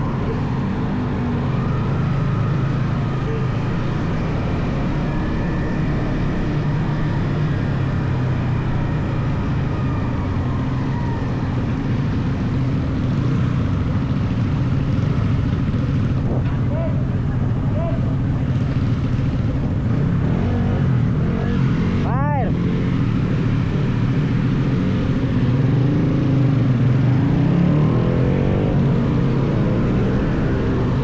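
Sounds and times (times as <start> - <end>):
road noise: 0.0 - 31.0
motorcycle engine running: 12.0 - 27.6
wind noise: 16.1 - 16.7.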